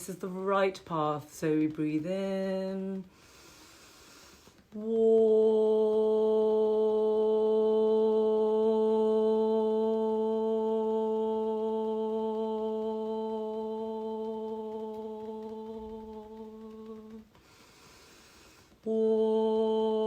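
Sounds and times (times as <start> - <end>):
person chanting a steady tone: 0.0 - 20.0
person inhaling: 3.1 - 4.6, 17.4 - 18.8.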